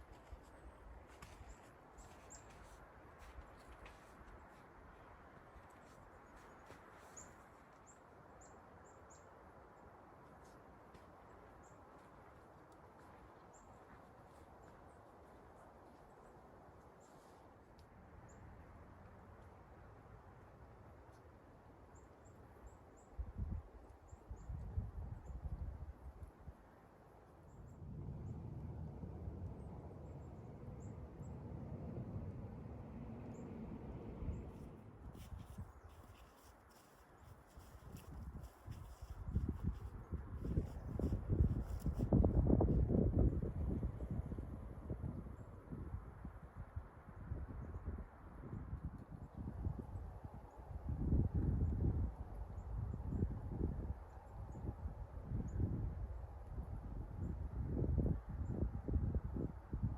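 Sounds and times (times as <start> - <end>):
low rumble: 27.6 - 35.2.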